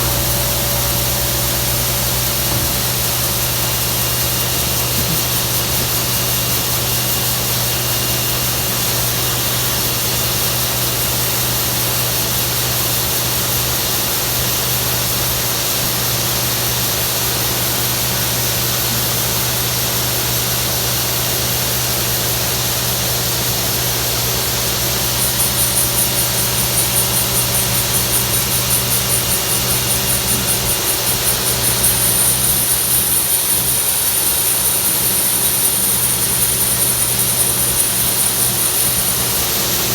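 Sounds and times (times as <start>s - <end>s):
high-pitched pulsing: 0.0s - 4.4s
combine harvester humming: 0.0s - 8.4s, 23.4s - 39.9s.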